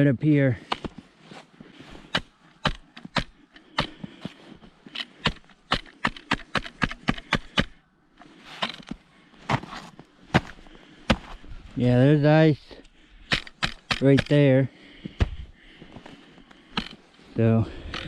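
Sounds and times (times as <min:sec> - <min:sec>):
footsteps crunching through snow: 0:00.6 - 0:02.5, 0:09.4 - 0:11.9
trekking poles striking ground: 0:00.6 - 0:11.4, 0:13.2 - 0:18.0.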